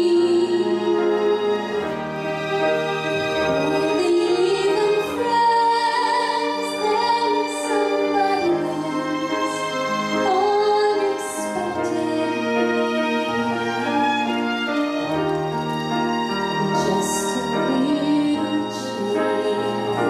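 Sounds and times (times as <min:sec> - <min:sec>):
string orchestra: 0:00.0 - 0:20.0
woman singing with vibrato: 0:03.6 - 0:14.2.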